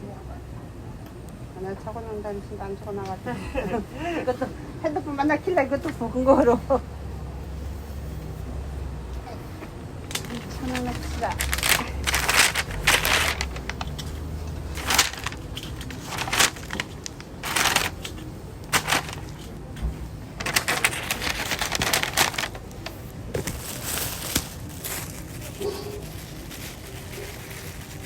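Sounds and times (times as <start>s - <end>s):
low background hum: 0.0s - 28.0s
plastic bags rustling: 7.4s - 28.0s.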